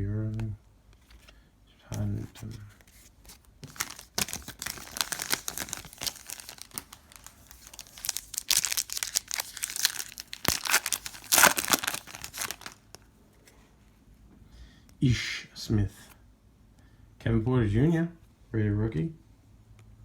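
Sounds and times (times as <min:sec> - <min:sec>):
card pack wrapper tearing and crinkling: 0:03.3 - 0:13.0.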